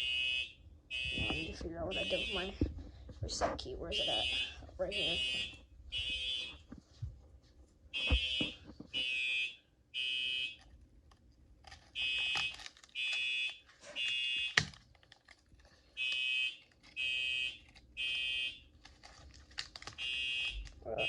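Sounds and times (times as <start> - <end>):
fire alarm beeping: 0.0 - 2.6, 3.9 - 6.6, 7.9 - 10.6, 12.0 - 14.6, 16.0 - 18.6, 20.0 - 21.0.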